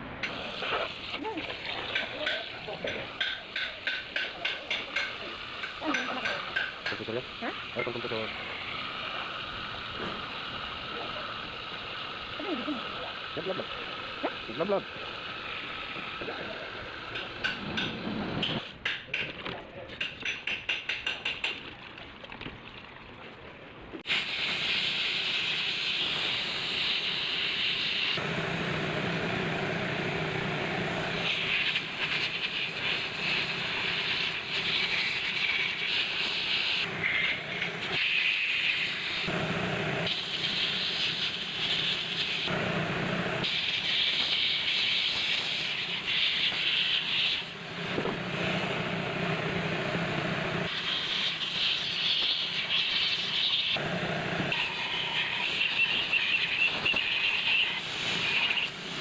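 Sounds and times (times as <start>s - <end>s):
compressed air hissing from blow gun: 24.0s - 59.0s.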